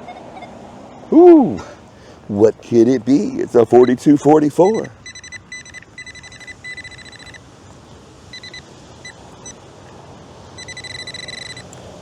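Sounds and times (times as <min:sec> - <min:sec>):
metal detector warbling tone: 0:03.7 - 0:07.4, 0:10.6 - 0:11.7.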